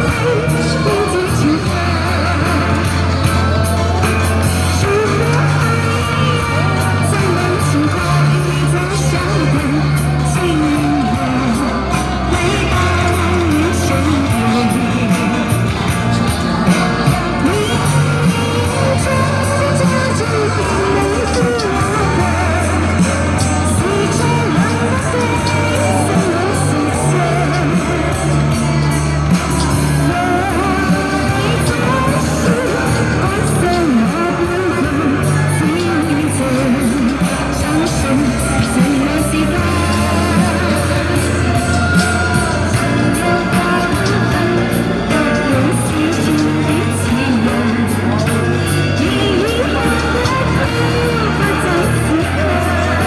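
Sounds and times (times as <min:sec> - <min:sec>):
backing music with bass: 0:00.0 - 0:53.0
person singing: 0:00.0 - 0:53.0.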